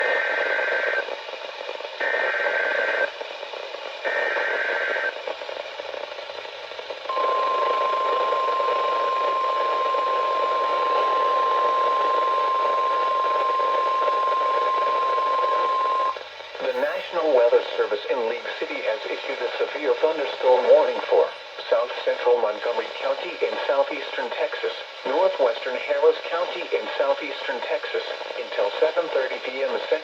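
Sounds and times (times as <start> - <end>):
radio hiss: 0.0 - 30.0
steady warning alarm tone: 7.1 - 17.0.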